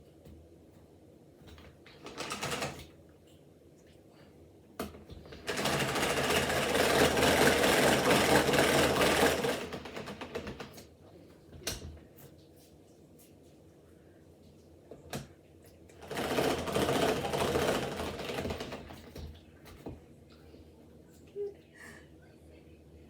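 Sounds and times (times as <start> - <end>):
rapid mechanical rattle: 5.4 - 10.8, 16.0 - 19.2.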